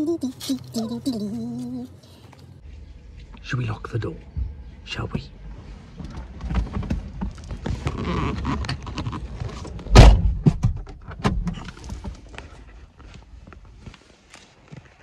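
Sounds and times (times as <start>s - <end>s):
van door slamming: 9.9s - 11.6s.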